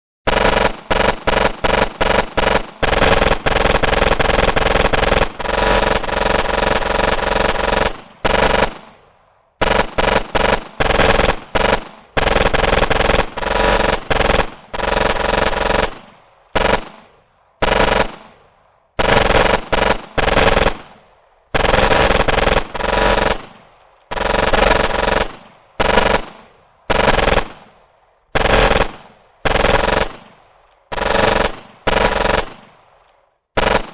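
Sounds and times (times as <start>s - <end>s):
automatic gunfire with echo: 0.3s - 33.9s.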